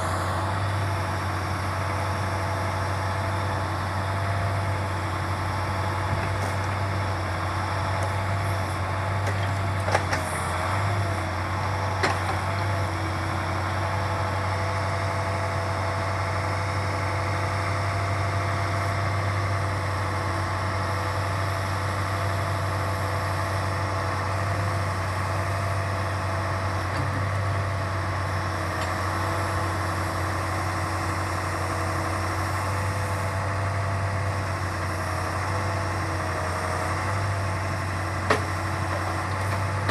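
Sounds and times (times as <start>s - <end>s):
hydraulic pump whine: 0.0s - 4.0s
truck engine running: 0.0s - 39.9s.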